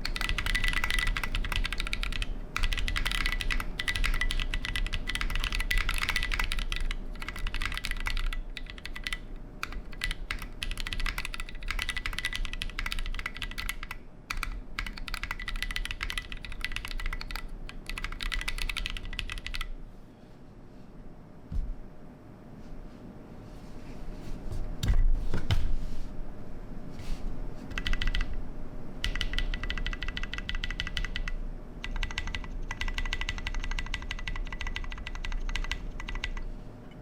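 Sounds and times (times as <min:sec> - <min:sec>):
mechanical keyboard typing: 0:00.0 - 0:19.7, 0:27.7 - 0:28.4, 0:29.0 - 0:36.5.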